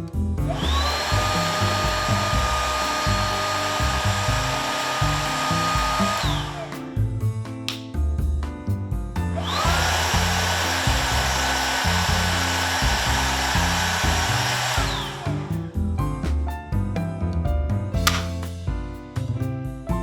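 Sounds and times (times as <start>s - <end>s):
background music: 0.0s - 20.0s
vacuum cleaner motor whine: 0.5s - 6.8s, 9.4s - 15.6s
vacuum suction rush: 0.5s - 6.9s, 9.4s - 15.7s.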